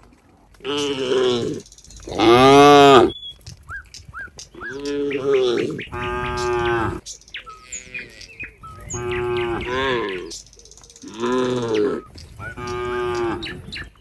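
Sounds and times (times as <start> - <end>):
cattle mooing: 0.6 - 3.1, 4.7 - 10.4, 11.1 - 13.9
high bird chirps: 0.7 - 14.0.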